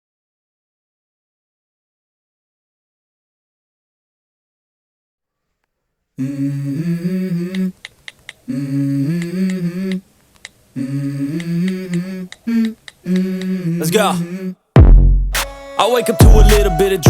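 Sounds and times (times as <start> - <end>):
hummed vocal melody: 6.2 - 14.7, 15.4 - 17.0
sharp clicks: 7.5 - 8.4, 9.2 - 10.6, 11.4 - 13.6.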